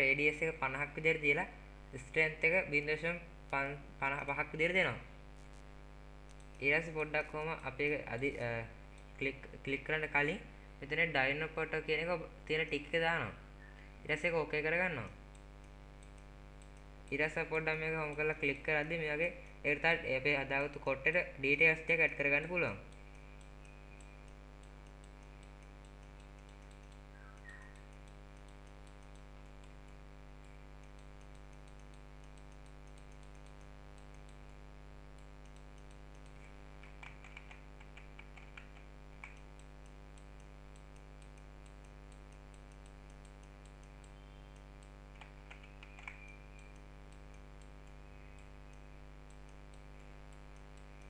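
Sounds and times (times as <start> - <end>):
steady low hum: 0.0 - 51.0
mouse and keyboard clicks: 15.3 - 34.6, 35.2 - 51.0.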